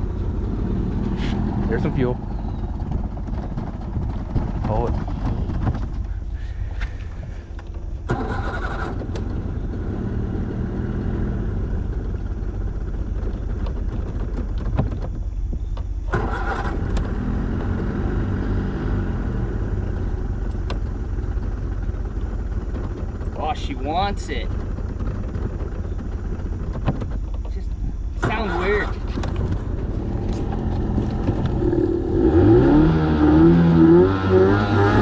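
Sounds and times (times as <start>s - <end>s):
engine sputtering: 0.0s - 35.0s
outboard motor pull cord cranking: 1.8s - 9.8s, 11.8s - 17.8s, 19.8s - 32.8s.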